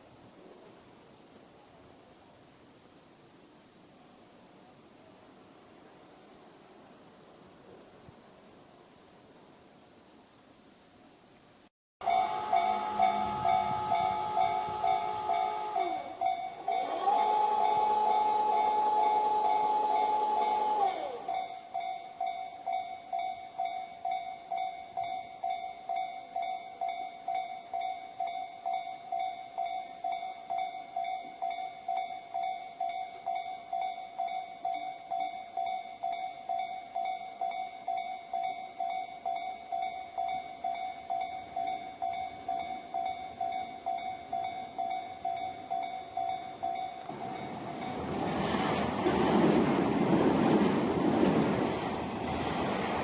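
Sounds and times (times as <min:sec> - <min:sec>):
level crossing warning bell: 0:12.0 - 0:48.2
train passing: 0:12.0 - 0:53.0.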